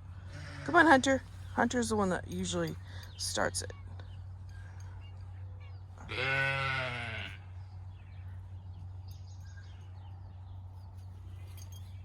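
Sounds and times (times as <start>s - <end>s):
low steady hum: 0.0s - 12.0s
sheep bleating: 6.0s - 7.5s.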